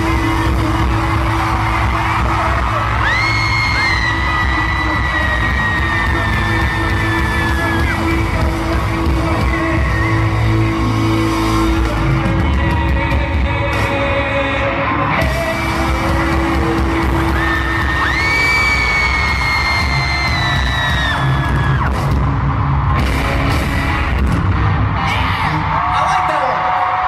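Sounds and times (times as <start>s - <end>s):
fans screaming: 0.0s - 27.0s
live pop-rock band music: 0.0s - 27.0s.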